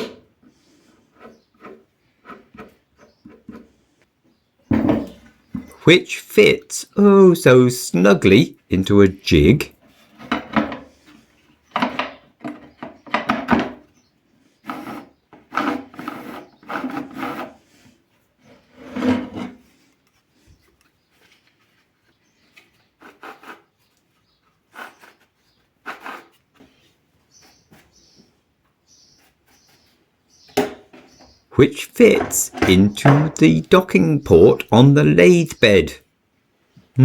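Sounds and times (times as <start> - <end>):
wood scraping on wood: 0.0 - 3.8, 14.6 - 28.2, 30.9 - 34.4.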